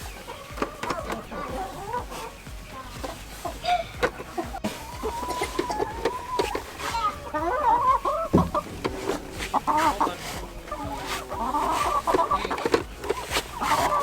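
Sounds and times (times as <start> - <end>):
hens clucking: 0.0 - 14.0
thump: 8.3 - 10.0.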